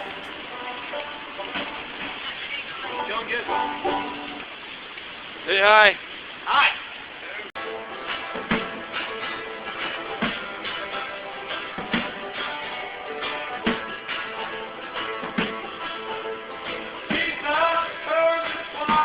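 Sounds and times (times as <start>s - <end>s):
person singing: 0.0s - 0.4s
rock music with guitar and drums: 7.6s - 19.0s.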